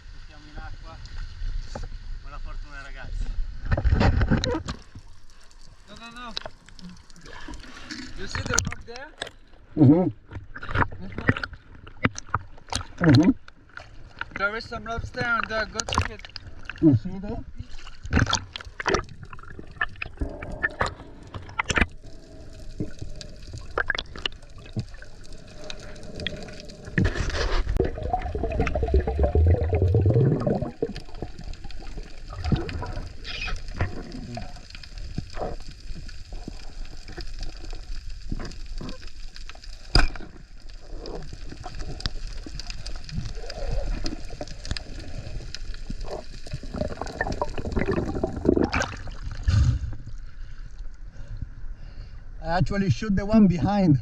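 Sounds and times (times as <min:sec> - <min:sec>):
water sloshing and gurgling: 0:03.1 - 0:52.2.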